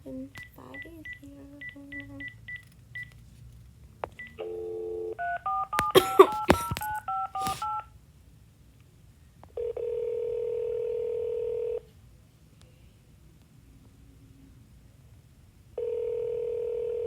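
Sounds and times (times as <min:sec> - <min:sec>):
phone ringing tone: 0:04.2 - 0:07.8, 0:09.6 - 0:11.8, 0:15.8 - 0:17.0.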